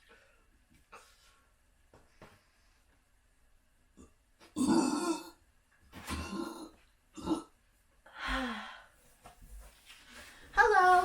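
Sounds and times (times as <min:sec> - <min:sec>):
woman burping: 0:04.0 - 0:05.4, 0:06.1 - 0:07.6.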